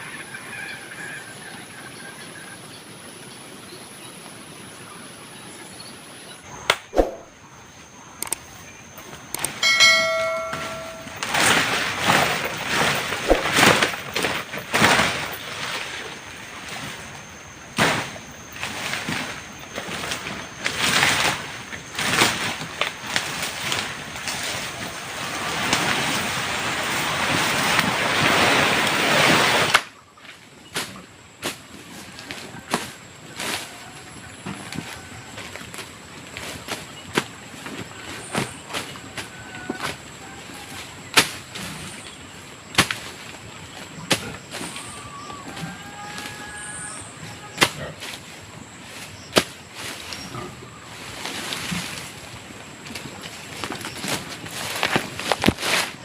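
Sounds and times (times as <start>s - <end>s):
hand tool striking ground: 9.4s - 15.5s
grass swishing and rustling: 9.6s - 17.1s, 50.9s - 56.0s.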